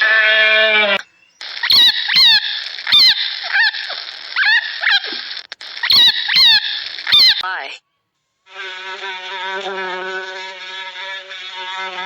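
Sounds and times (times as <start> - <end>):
animal calling: 0.0 - 7.5.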